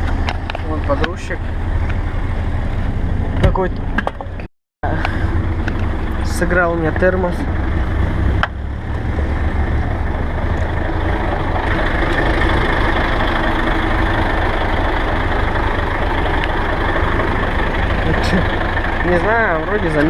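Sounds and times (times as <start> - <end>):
truck diesel engine idling: 4.8 - 20.0.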